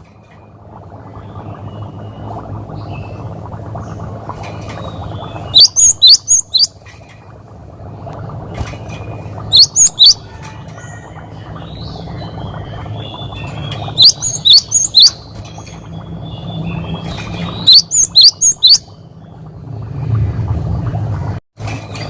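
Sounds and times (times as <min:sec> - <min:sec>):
steady low hum: 0:00.0 - 0:22.0
soft bird chirps: 0:04.7 - 0:06.8, 0:08.9 - 0:19.4
bird singing sharp high notes: 0:04.8 - 0:06.7, 0:09.5 - 0:10.3, 0:11.6 - 0:19.0.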